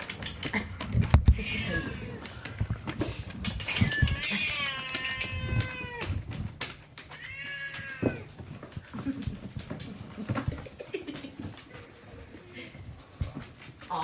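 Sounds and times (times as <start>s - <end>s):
small clicks and knocks: 0.0s - 10.6s
cat meowing: 3.7s - 6.3s, 7.1s - 8.3s.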